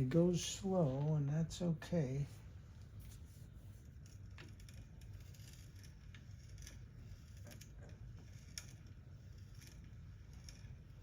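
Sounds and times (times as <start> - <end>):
drill bit scraping wood: 4.0 - 11.0.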